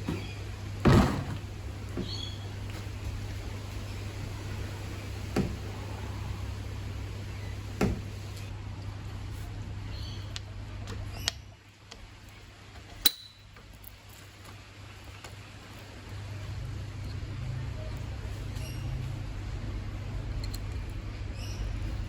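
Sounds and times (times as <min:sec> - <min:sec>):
ringing metallic clink: 0:13.0 - 0:13.4.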